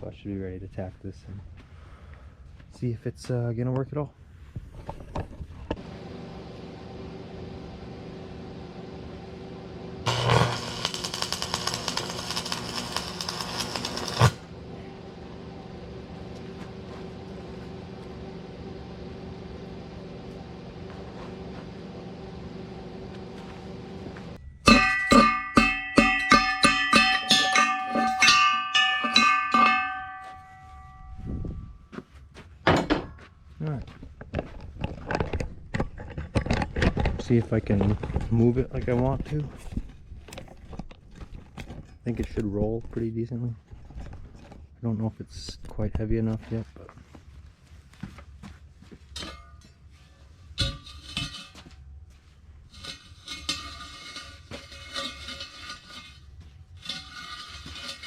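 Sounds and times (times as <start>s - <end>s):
arc welder humming: 5.8s - 31.0s
welding arc crackling: 9.4s - 14.6s
sharp ringing metal strikes: 24.4s - 31.9s.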